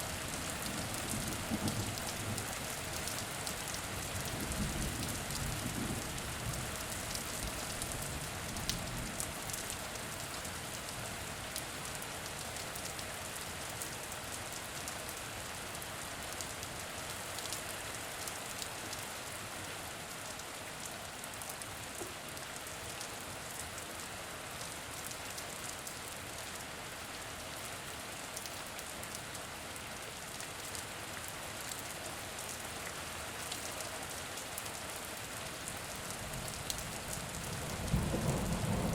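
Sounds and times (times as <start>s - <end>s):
rain on a hard surface: 0.0s - 38.9s
low thunder rumble: 37.6s - 38.9s.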